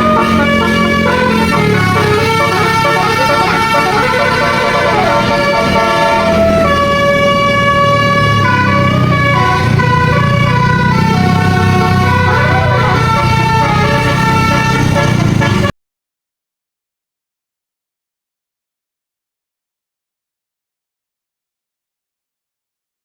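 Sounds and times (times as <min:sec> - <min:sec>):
multi-tone bus horn playing tune: 0:00.0 - 0:15.8.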